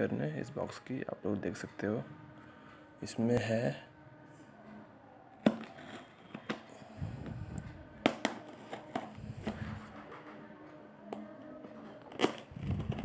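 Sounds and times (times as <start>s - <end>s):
packaging rustling and scraping: 5.4s - 13.0s.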